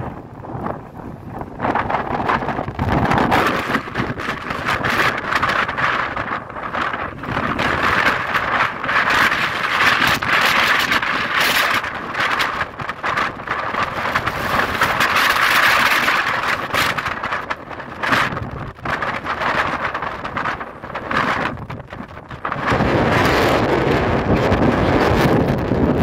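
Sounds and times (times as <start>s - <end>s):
strong wind on microphone: 0.0s - 26.0s.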